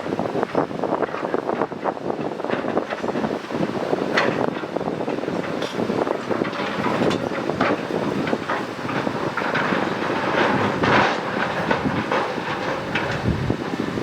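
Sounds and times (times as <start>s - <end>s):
excavator working: 0.0s - 14.0s
metal and rock clanking: 0.3s - 14.0s.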